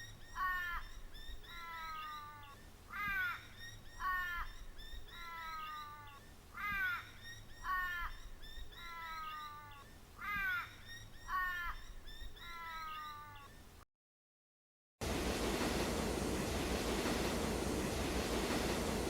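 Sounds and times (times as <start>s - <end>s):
bird calling harshly: 0.0s - 13.7s.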